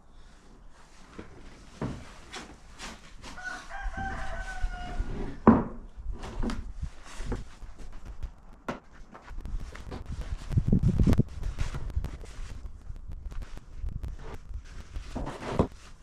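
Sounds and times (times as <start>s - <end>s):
rooster crowing: 3.2s - 5.4s.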